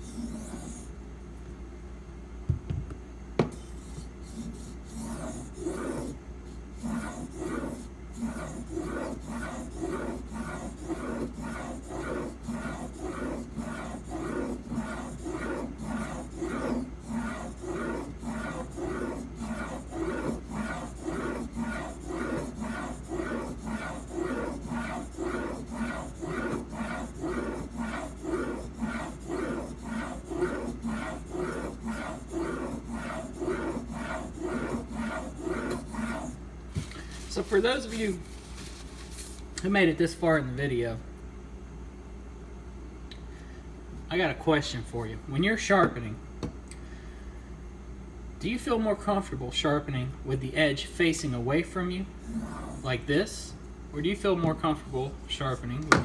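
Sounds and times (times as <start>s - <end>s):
knife grinding on sharpening stone: 6.8s - 36.4s.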